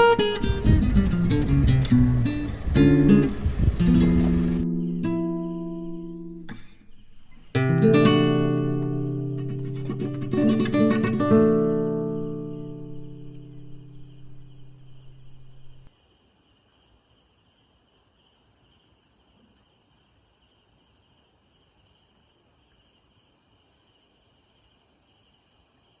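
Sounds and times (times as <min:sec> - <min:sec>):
acoustic guitar note: 0:00.0 - 0:15.9
insects chirping: 0:00.0 - 0:26.0.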